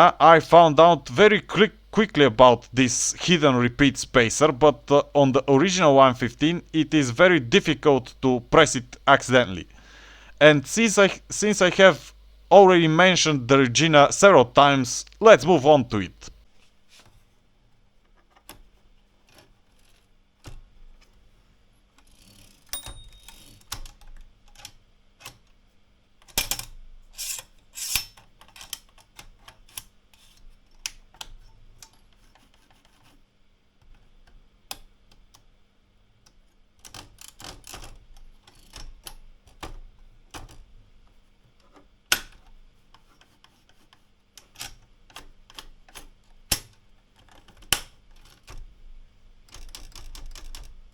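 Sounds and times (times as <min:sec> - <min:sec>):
typewriter clicks and clunks: 0:49.5 - 0:50.8.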